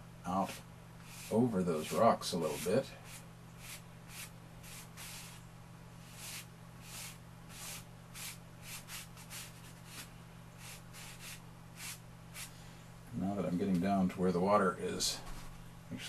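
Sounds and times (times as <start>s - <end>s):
chalk scratching on surface: 0.4s - 5.4s, 6.0s - 12.5s.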